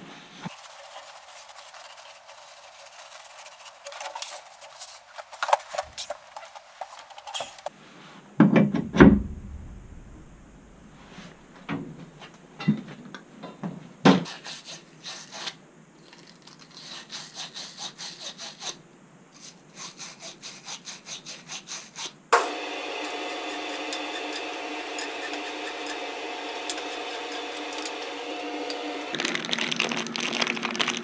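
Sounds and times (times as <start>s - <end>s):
hand tool scraping: 0.5s - 7.7s, 22.4s - 29.2s.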